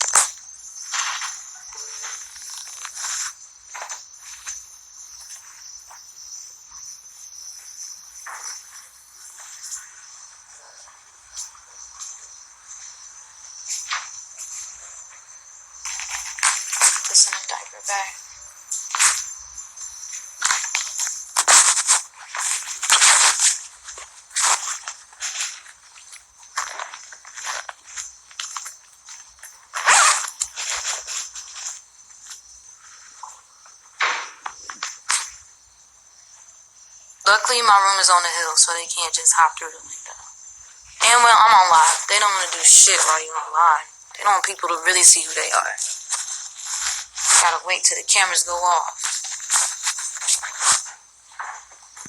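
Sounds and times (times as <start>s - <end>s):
crickets chirring: 0.0s - 52.0s.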